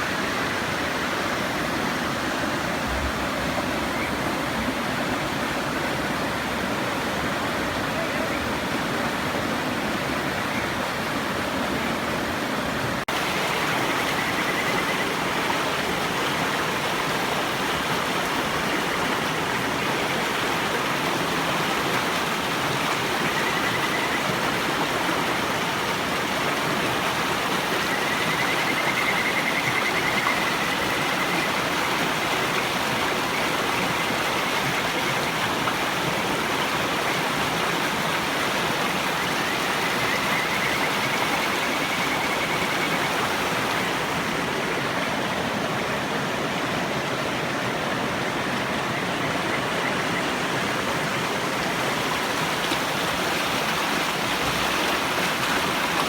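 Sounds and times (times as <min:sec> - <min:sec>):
river water rushing: 0:00.0 - 0:56.0
frogs trilling whistles: 0:13.2 - 0:16.0, 0:23.0 - 0:24.6, 0:27.6 - 0:32.3, 0:39.1 - 0:44.0.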